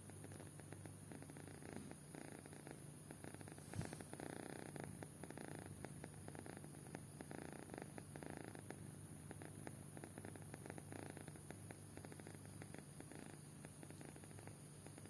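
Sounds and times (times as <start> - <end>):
kitten snoring: 0.0 - 15.0
soft bump: 3.7 - 4.1.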